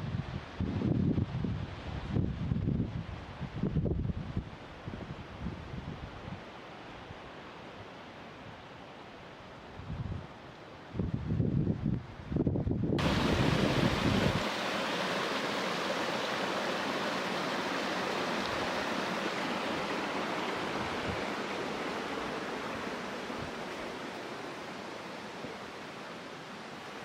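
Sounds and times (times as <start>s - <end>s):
wind rumbling on microphone: 0.0s - 6.5s, 9.7s - 25.8s
stream water rushing: 13.0s - 27.0s.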